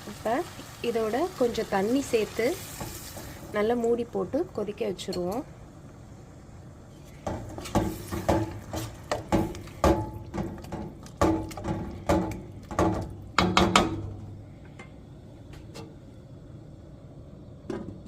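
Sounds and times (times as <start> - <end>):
spoon stirring and scraping a pan: 6.9 - 13.1.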